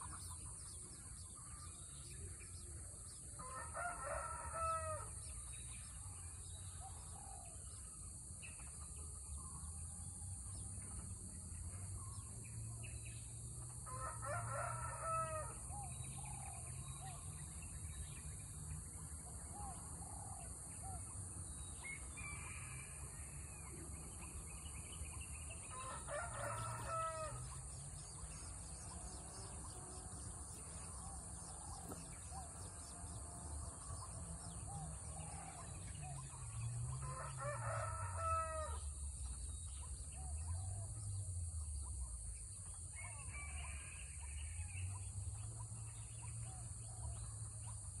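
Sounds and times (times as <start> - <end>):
rooster crowing: 3.4 - 5.2, 13.9 - 15.7, 25.7 - 27.5, 36.9 - 38.8.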